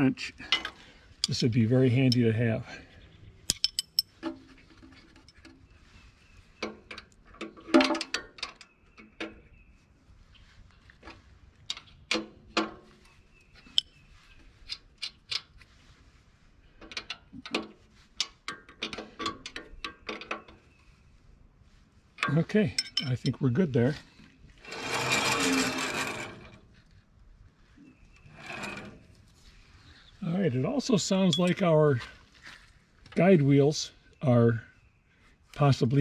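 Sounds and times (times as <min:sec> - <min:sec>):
wrench clinking on metal: 0:03.5 - 0:04.2, 0:22.2 - 0:23.4.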